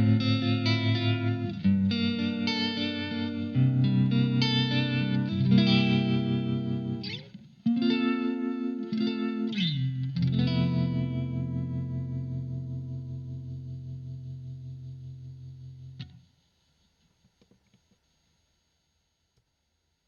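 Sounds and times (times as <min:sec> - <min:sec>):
electric guitar chords with modulation: 0:00.0 - 0:16.2.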